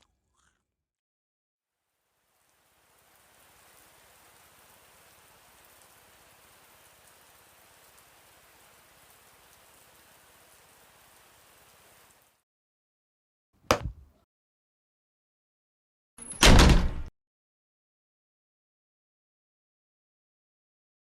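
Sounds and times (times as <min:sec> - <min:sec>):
faint steady hiss: 0:01.8 - 0:12.4.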